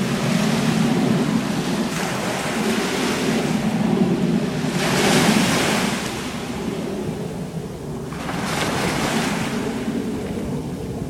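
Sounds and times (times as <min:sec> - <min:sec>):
ocean surf washing: 0:00.0 - 0:11.0
wind buffeting microphone: 0:00.0 - 0:11.0.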